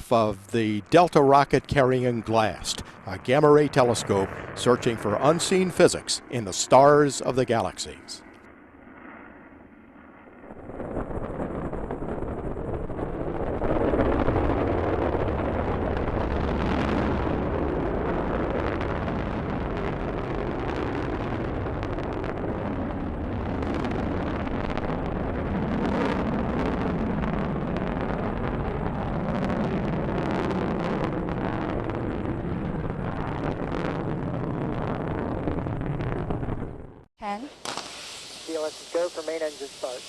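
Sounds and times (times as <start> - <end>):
rocket engine rumble with crackle: 0.0 - 40.0.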